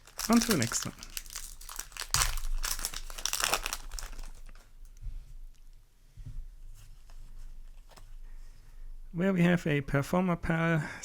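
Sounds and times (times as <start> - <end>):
cards rustling: 0.0 - 4.6
foil pack tearing and crinkling: 0.0 - 4.6.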